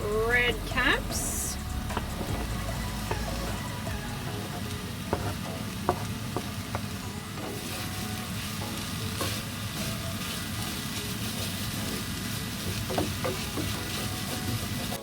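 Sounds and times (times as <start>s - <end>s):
vegetables sizzling in a pan: 0.0s - 15.0s
utensil tapping against pan: 5.1s - 6.9s, 12.7s - 14.1s.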